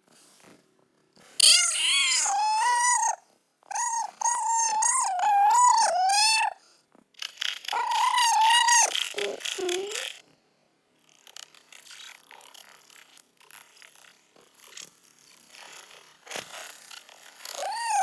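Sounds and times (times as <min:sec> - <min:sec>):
kitten meowing: 0:01.4 - 0:06.6, 0:07.7 - 0:10.1, 0:17.6 - 0:18.0.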